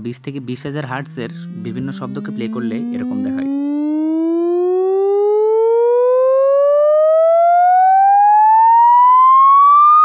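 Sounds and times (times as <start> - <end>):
rising frequency sweep tone: 0.6 - 10.0.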